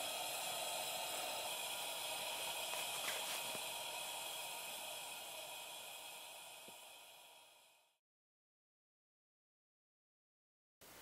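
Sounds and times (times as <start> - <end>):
wood fire hissing: 0.0 - 8.0.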